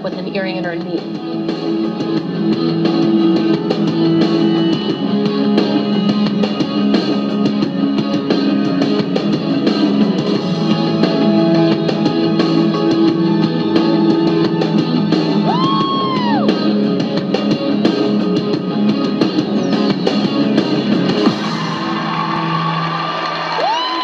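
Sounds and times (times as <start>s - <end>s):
drum beat: 0.0s - 22.8s
guitar: 0.0s - 24.0s.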